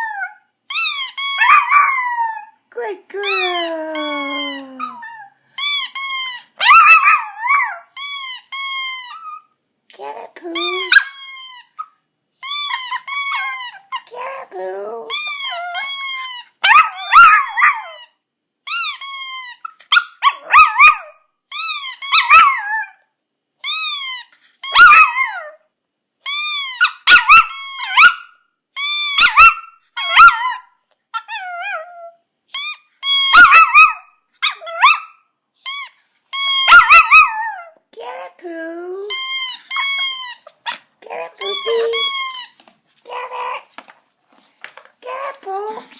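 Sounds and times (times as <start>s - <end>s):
small dog howling: 0.0s - 0.4s, 1.4s - 2.6s, 3.4s - 5.4s, 6.6s - 7.9s, 16.6s - 18.0s, 20.2s - 21.1s, 22.2s - 23.0s, 24.7s - 25.6s, 29.2s - 32.2s, 33.3s - 35.2s, 36.6s - 37.8s
rubber squeaky toy squeaking: 0.0s - 2.4s, 3.2s - 23.0s, 23.6s - 25.6s, 26.2s - 37.8s, 39.0s - 43.7s.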